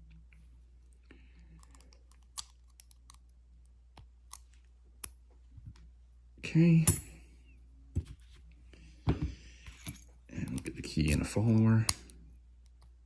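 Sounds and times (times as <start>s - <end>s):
padlock parts clicking: 1.6s - 3.3s.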